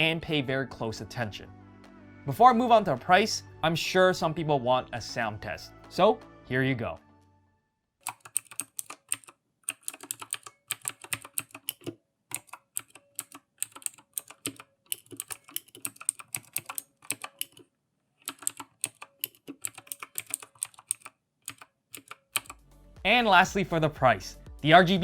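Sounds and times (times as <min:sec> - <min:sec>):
mechanical keyboard key clicks: 0:08.0 - 0:17.6, 0:18.2 - 0:22.6.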